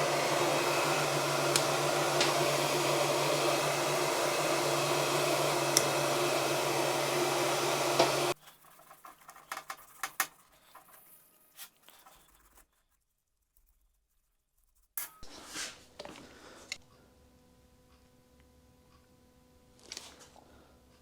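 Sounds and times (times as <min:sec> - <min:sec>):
heat gun blowing: 0:00.0 - 0:08.4.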